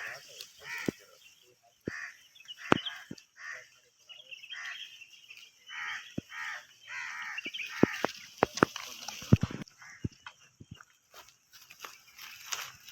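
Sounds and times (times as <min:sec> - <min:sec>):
crows cawing: 0:00.0 - 0:01.2, 0:01.8 - 0:03.8, 0:04.5 - 0:05.0, 0:05.6 - 0:08.7, 0:09.3 - 0:10.4.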